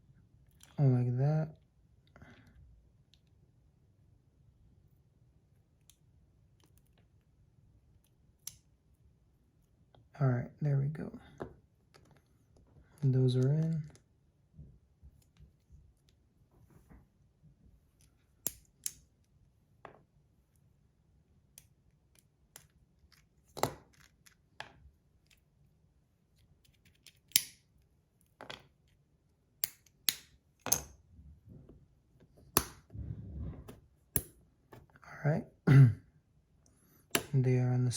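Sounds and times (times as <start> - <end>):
plastic parts clicking and snapping: 26.6 - 27.6.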